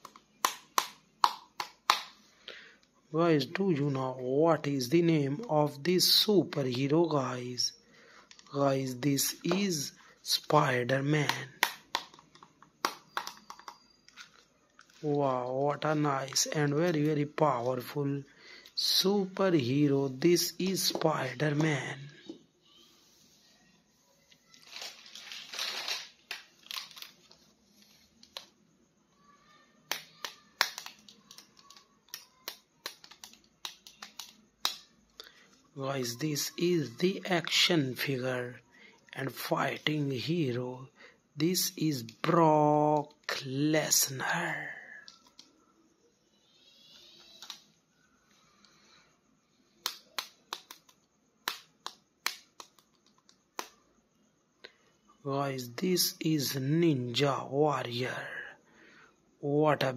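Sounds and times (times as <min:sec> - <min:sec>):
sharp plastic clicks and taps: 0:00.0 - 0:02.1, 0:11.2 - 0:13.8, 0:29.9 - 0:34.9, 0:49.8 - 0:53.8
plastic packaging crinkling: 0:24.4 - 0:28.4.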